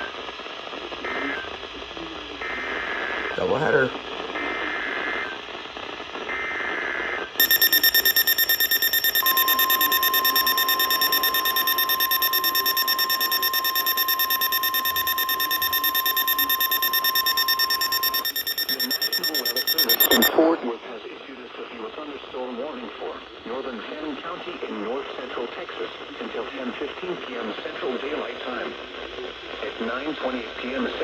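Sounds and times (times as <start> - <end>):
buzzing digital data burst: 7.4 - 20.3
rapid shrill alarm beeping: 7.4 - 20.3
steady warning alarm tone: 7.4 - 20.3.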